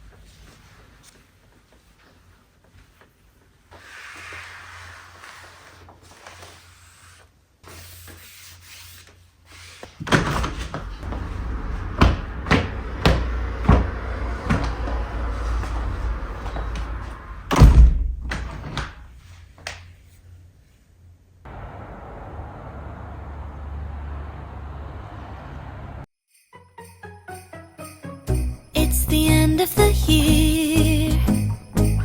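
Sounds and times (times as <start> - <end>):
heavy thud: 11.0 - 15.1, 17.5 - 19.1
low rumble: 11.0 - 18.3.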